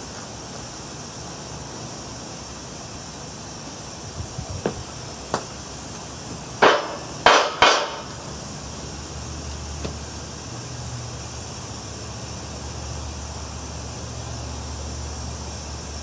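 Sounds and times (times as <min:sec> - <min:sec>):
tool knocking on hard object: 0:04.6 - 0:05.5, 0:06.6 - 0:08.1.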